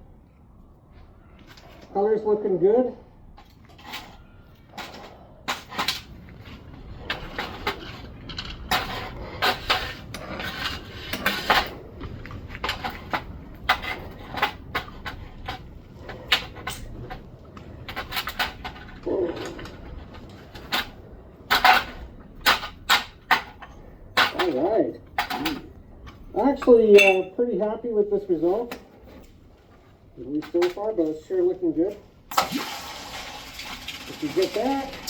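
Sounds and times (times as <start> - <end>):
metal objects clinking and knocking: 3.4 - 27.4.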